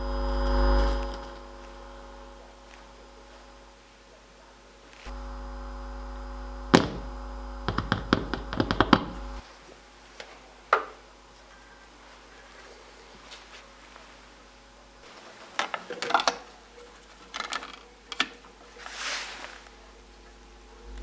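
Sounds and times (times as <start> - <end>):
small electric motor humming: 0.0 - 3.9, 4.7 - 9.4
loud knocks: 6.7 - 9.4.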